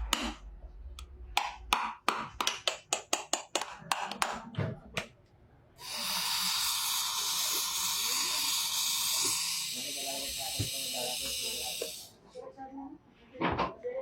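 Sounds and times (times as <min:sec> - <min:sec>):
steady loud hiss: 0:05.8 - 0:12.2.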